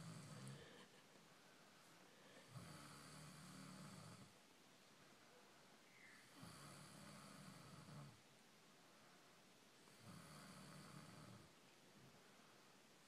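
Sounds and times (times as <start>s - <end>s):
person snoring: 0.0s - 0.9s, 2.4s - 4.3s, 10.0s - 11.5s.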